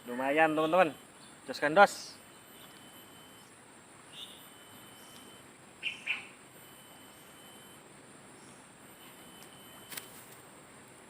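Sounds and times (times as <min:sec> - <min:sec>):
bird chirps: 0:00.0 - 0:07.6
crickets trilling: 0:00.0 - 0:11.0.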